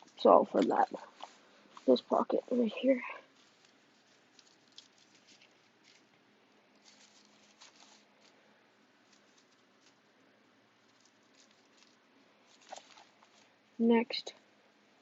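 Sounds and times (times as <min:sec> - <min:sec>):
hands rummaging through backpack: 0:06.8 - 0:08.4.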